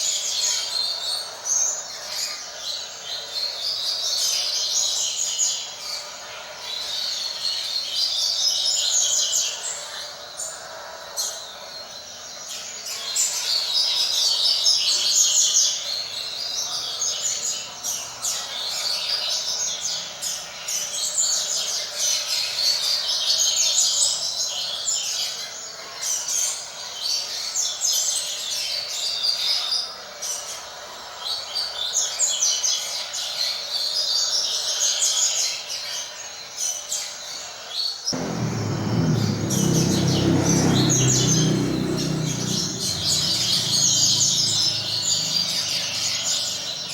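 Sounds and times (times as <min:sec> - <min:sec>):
low rumbling noise: 0:38.2 - 0:46.9.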